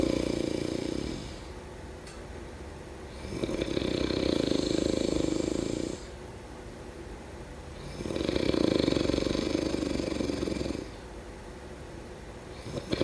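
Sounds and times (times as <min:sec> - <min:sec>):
person snoring: 0:00.0 - 0:01.5, 0:03.1 - 0:06.1, 0:07.8 - 0:11.0, 0:12.6 - 0:13.0.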